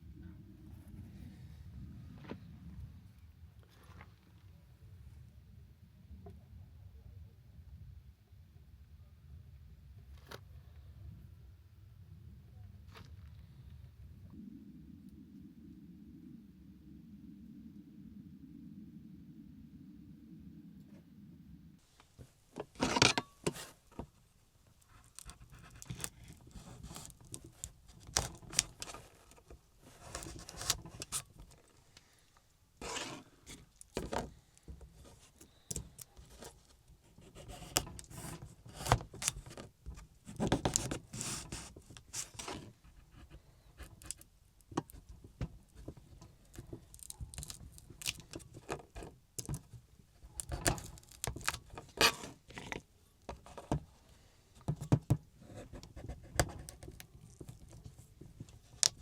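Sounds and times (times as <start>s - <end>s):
objects rustling and scraping: 21.8s - 59.0s.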